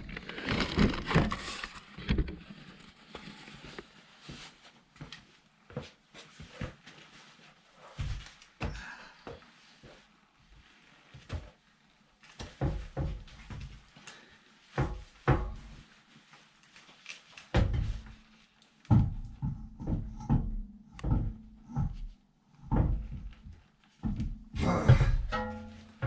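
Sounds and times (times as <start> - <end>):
knocks and thumps from wheel and tools: 17.5 - 18.2, 18.9 - 26.0.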